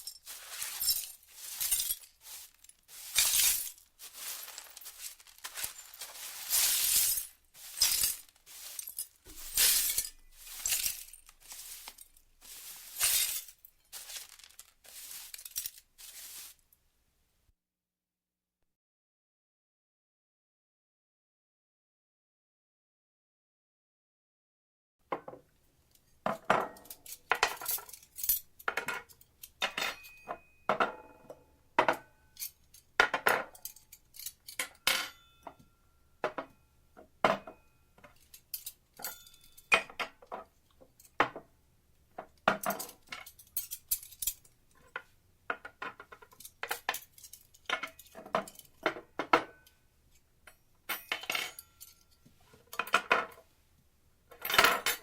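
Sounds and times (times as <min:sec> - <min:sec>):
dishes and cutlery clattering: 0:28.7 - 0:31.0.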